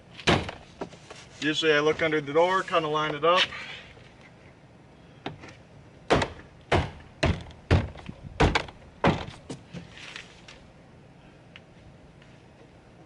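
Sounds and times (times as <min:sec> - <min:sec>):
loud thumps on car door panel: 0:06.1 - 0:09.6.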